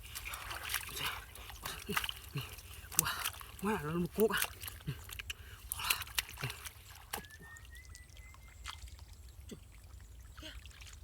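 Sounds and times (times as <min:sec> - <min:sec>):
water trickling and dripping: 0:00.0 - 0:11.0
small plops and clicks: 0:04.2 - 0:08.8.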